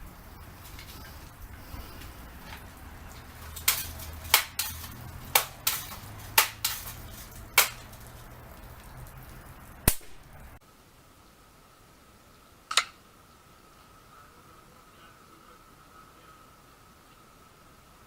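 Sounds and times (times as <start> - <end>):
faint low hum: 7.0 - 18.0.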